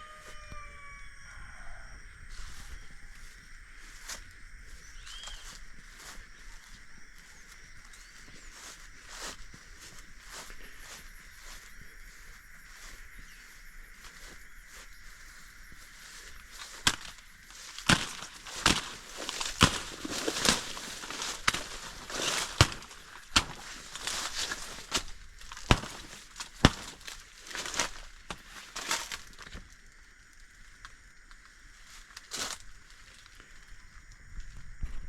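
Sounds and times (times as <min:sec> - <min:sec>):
high-pitched background hiss: 0:00.0 - 0:22.4
rustling in vegetation: 0:01.6 - 0:35.0
footsteps crunching through dry leaves: 0:02.2 - 0:29.6, 0:31.8 - 0:35.0.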